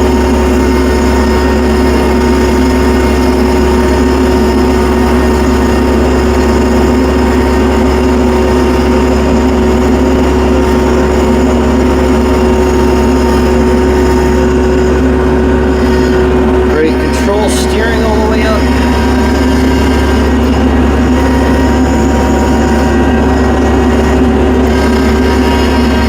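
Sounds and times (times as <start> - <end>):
tractor engine running: 0.0 - 26.0.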